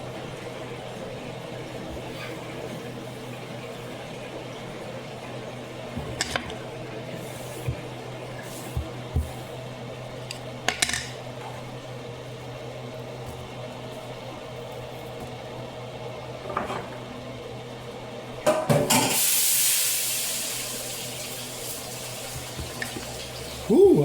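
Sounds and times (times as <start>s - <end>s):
water sizzling in hot pan: 18.9s - 23.5s.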